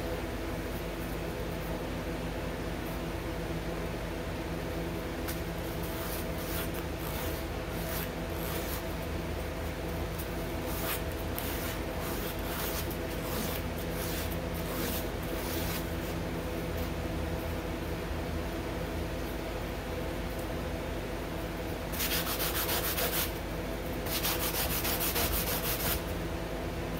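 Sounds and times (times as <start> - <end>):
sandpaper scratching: 22.0 - 23.3, 24.1 - 26.0.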